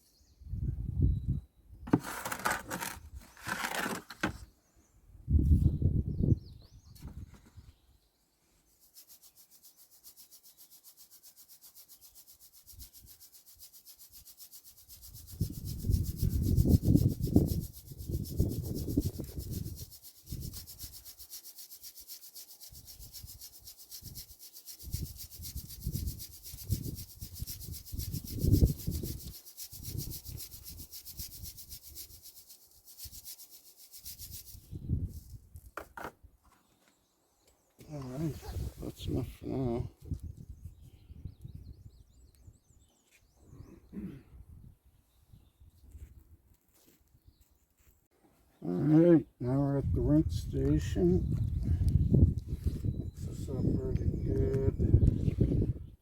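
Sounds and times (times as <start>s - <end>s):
ore scraped through a strainer: 1.9s - 4.3s, 8.8s - 34.7s.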